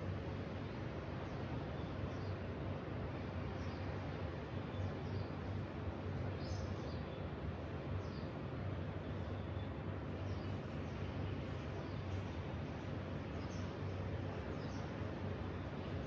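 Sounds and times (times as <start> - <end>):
low rumble and hiss: 0.0 - 16.0
small birds chirping: 4.7 - 5.4, 6.3 - 7.3, 9.1 - 16.0.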